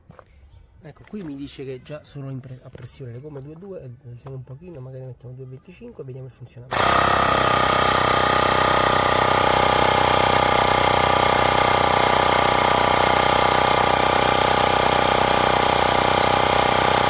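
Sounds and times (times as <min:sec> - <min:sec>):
tyre inflator compressor running: 0:06.7 - 0:17.0.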